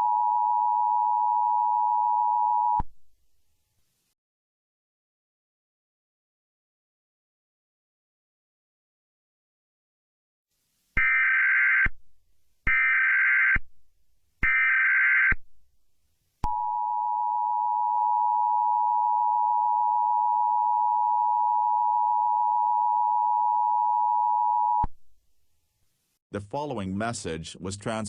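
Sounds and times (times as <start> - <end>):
loud two-tone alarm: 11.0 - 11.9, 12.7 - 13.6, 14.4 - 15.4.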